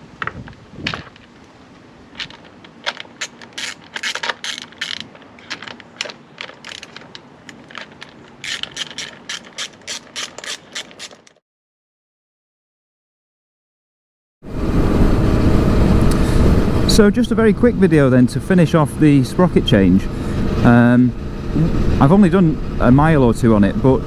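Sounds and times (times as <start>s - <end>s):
rapid mechanical clicking: 2.2s - 11.4s.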